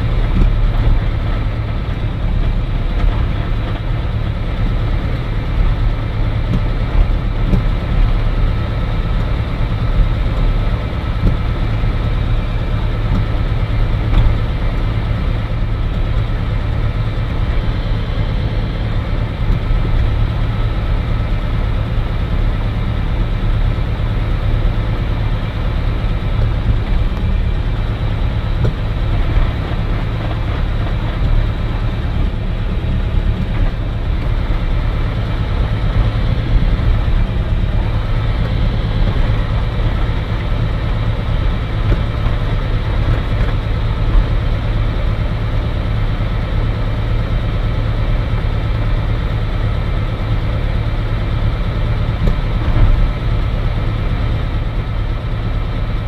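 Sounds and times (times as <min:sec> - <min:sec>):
propeller plane engine droning: 0:00.0 - 0:56.0.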